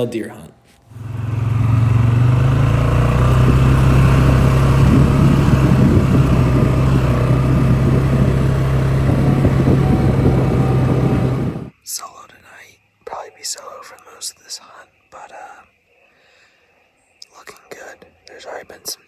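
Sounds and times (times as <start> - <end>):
road noise: 0.9 - 11.7
vehicle engine driving: 0.9 - 11.7.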